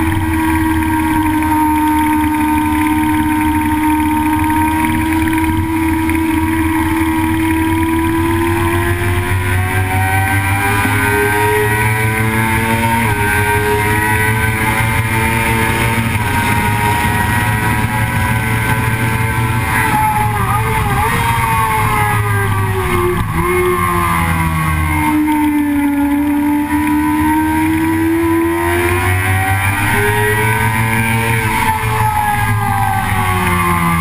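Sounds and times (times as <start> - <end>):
vehicle engine revving under load: 0.0 - 34.0
wind and road noise: 0.0 - 34.0.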